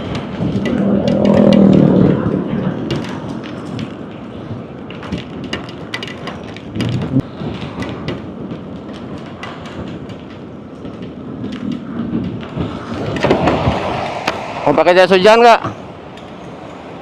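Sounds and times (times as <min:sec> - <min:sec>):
low rumble: 0:00.0 - 0:05.5.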